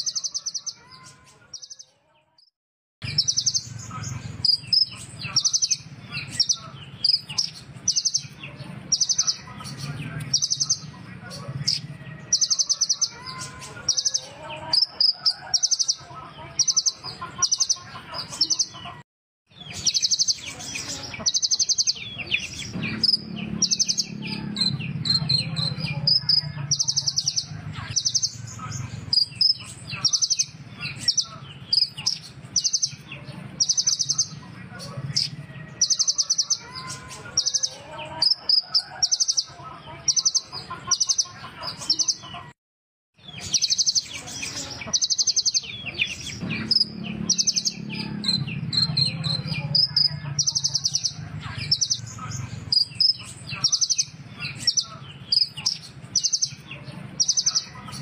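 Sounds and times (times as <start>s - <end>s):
sunbird singing buzzy trills: 3.0s - 10.9s.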